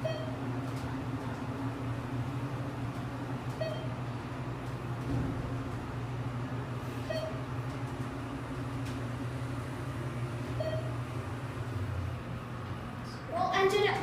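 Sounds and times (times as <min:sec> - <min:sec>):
elevator car humming: 0:00.0 - 0:14.0
short electronic beep: 0:07.0 - 0:07.4, 0:10.6 - 0:10.9.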